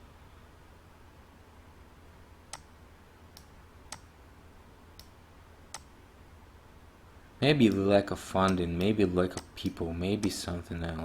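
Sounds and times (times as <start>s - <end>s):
faint low hum: 0.0s - 11.0s
computer mouse clicks: 2.5s - 2.8s, 3.4s - 4.1s, 5.0s - 5.9s, 8.5s - 10.4s.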